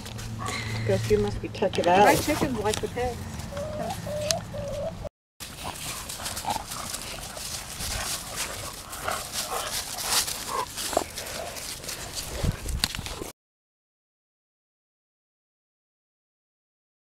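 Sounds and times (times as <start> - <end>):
rustling and clicking noise: 0.0 - 13.3
animal calls: 0.4 - 1.2, 3.2 - 7.0.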